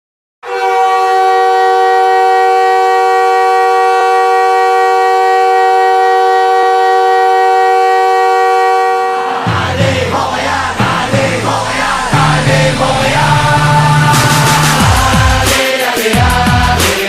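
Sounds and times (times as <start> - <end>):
hockey goal horn blaring: 0.4 - 10.2.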